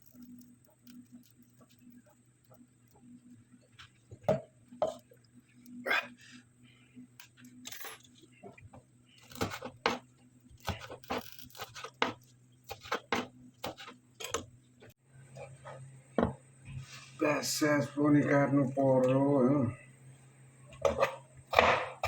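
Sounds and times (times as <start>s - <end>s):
kitchen knocks and taps: 16.2s - 16.4s.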